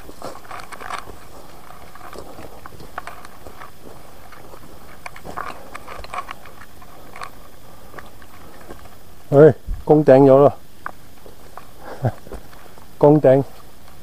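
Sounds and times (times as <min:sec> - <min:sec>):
twigs snapping: 0:00.0 - 0:08.9
footsteps on forest trail: 0:00.0 - 0:14.0.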